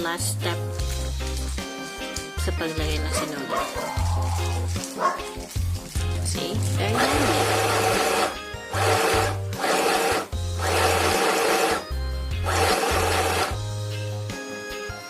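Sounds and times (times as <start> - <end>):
background music: 0.0 - 15.0
sewing machine stitching: 6.8 - 11.8, 12.4 - 13.6.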